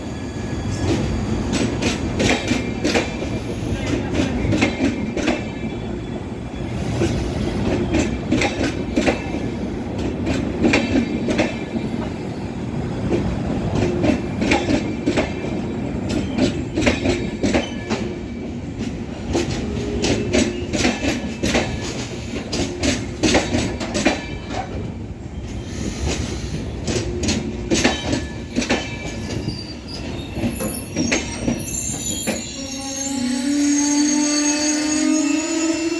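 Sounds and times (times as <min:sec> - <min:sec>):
wheel or brake squeal: 0:00.0 - 0:01.7, 0:29.1 - 0:35.9
train wheels clicking over rail joints: 0:00.8 - 0:05.8, 0:06.9 - 0:12.1, 0:13.1 - 0:31.6.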